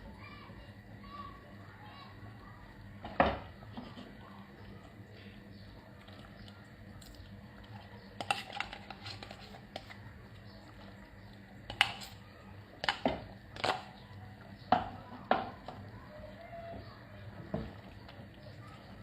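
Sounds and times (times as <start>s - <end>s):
utensil clinking against a pot: 8.1s - 10.0s, 11.6s - 12.2s, 12.8s - 14.0s.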